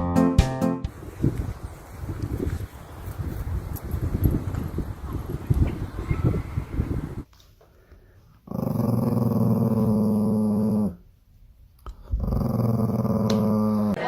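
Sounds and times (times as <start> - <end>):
dog growling: 8.5 - 11.0, 12.0 - 14.0.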